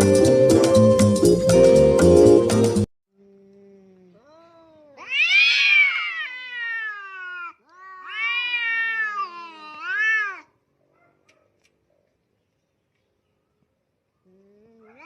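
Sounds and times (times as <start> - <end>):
cat meowing: 4.2 - 10.6, 14.7 - 15.0.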